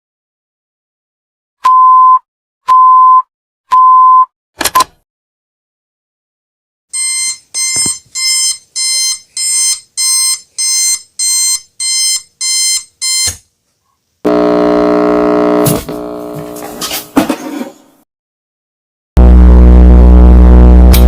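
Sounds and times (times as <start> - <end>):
alarm clock buzzer beeping: 7.0 - 13.4, 14.3 - 16.2.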